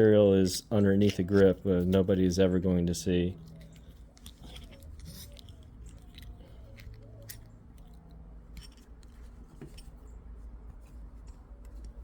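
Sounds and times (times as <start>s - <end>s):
clicks and scrapes of revolver parts: 0.4s - 2.0s, 3.4s - 10.2s.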